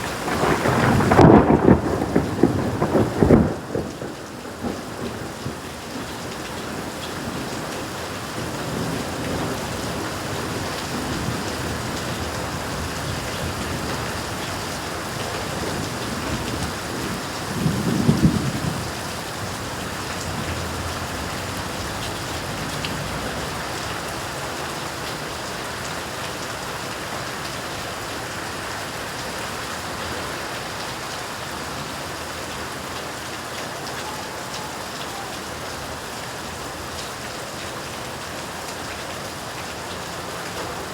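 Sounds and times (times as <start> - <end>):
thunder rumble: 0.0 - 6.1, 8.4 - 24.6
heavy rain falling: 0.0 - 40.9.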